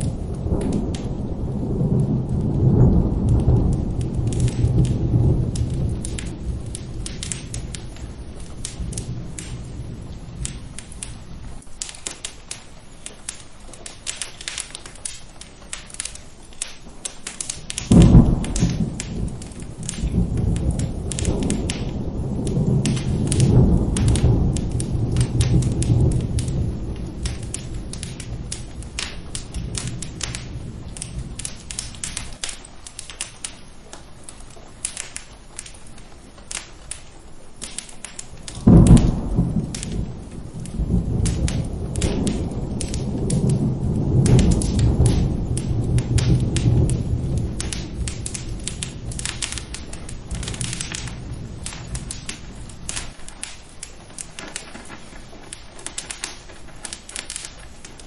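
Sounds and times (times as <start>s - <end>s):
thunderclap rolling into rumble: 0.0s - 11.6s, 17.6s - 32.4s, 38.5s - 58.0s
fire crackling: 0.0s - 58.0s
steady rain: 0.0s - 58.0s.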